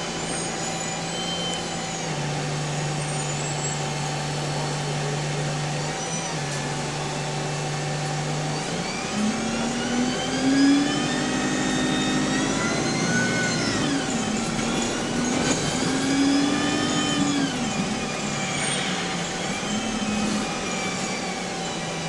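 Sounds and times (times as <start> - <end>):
high gearbox whine: 0.0 - 4.6, 11.3 - 22.0
bus diesel engine accelerating: 0.0 - 22.0.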